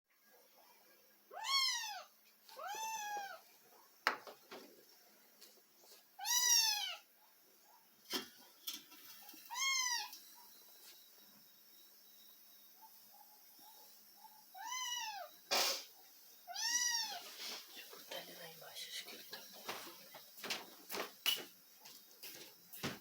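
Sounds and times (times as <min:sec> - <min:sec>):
cat meowing: 0:01.3 - 0:03.4, 0:06.2 - 0:07.1, 0:09.5 - 0:10.2, 0:14.6 - 0:15.3, 0:16.5 - 0:17.2.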